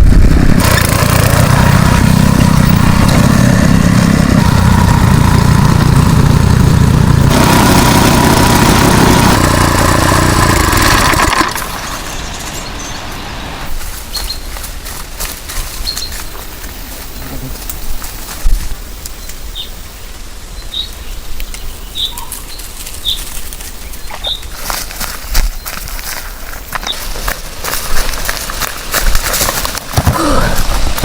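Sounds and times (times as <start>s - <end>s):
walk-behind tractor engine running: 0.0s - 12.7s, 22.8s - 31.0s.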